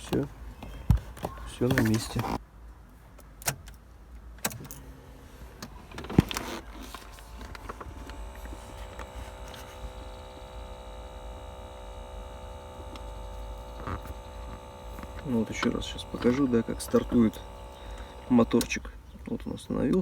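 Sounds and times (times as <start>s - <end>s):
small fan motor whining hum: 5.4s - 19.4s
clicks: 6.0s - 20.0s.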